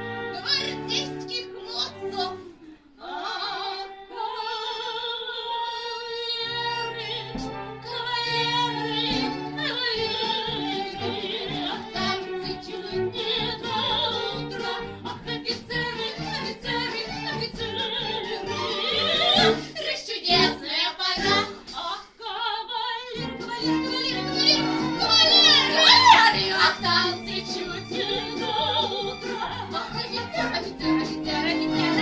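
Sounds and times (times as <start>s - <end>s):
woman singing with vibrato: 0.0s - 32.0s
instrumental accompaniment: 6.6s - 19.7s, 23.2s - 32.0s.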